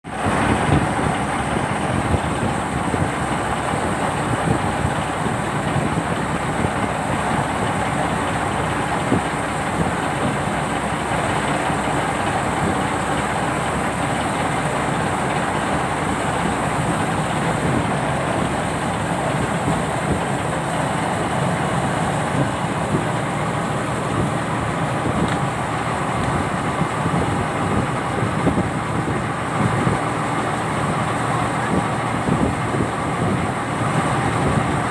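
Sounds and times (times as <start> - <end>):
boat engine running: 0.0 - 34.9.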